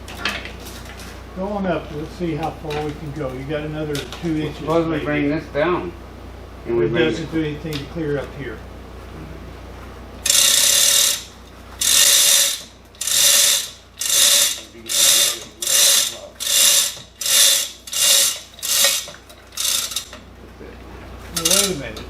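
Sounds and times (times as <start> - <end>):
hand ratchet clicking: 10.2 - 20.2, 21.4 - 21.8.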